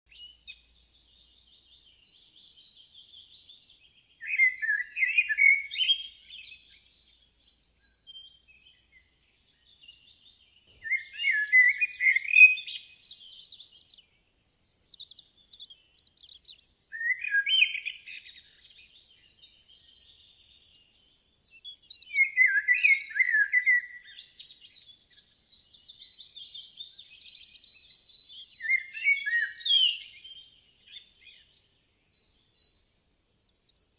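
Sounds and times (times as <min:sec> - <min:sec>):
songbirds chirping: 0:00.1 - 0:33.9
high bird twittering: 0:10.8 - 0:18.7, 0:20.9 - 0:25.3, 0:26.5 - 0:31.4, 0:33.6 - 0:33.9.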